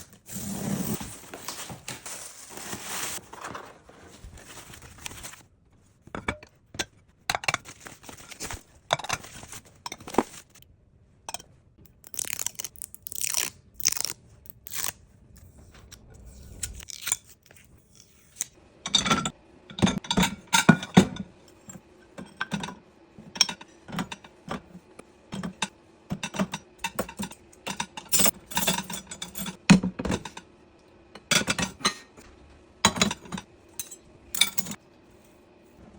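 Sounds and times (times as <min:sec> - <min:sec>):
dishes and cutlery clinking: 0:18.9 - 0:24.7, 0:25.3 - 0:30.5, 0:31.2 - 0:32.2, 0:32.8 - 0:34.8.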